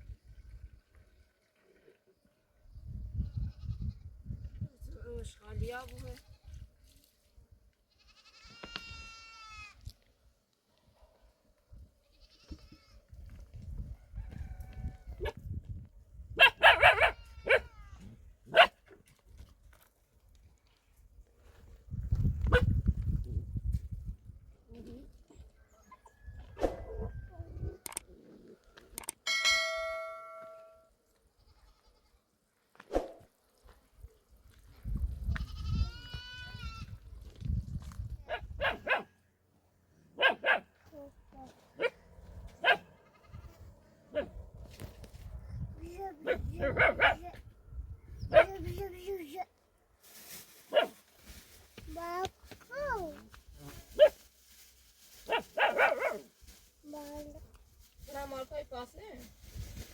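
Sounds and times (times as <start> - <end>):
goat bleating: 8.0 - 9.8, 12.1 - 13.0, 31.5 - 32.1, 35.4 - 36.9, 43.0 - 43.5
goats bleating: 8.0 - 9.8
metallic clang ringing: 29.3 - 30.8.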